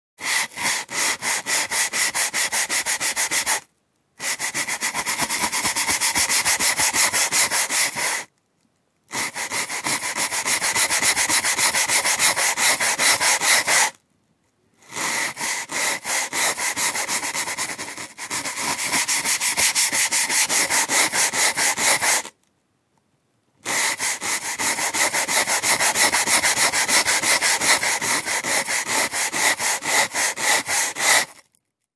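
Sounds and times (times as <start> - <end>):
scrubbing brush scrubbing: 0.2 - 3.6, 4.2 - 8.3, 9.2 - 13.9, 15.0 - 22.3, 23.7 - 31.4.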